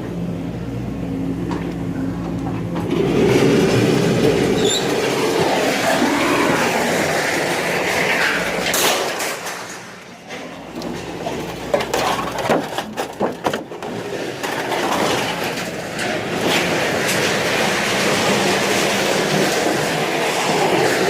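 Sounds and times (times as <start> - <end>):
scrap metal scraping and grinding: 2.8 - 21.0.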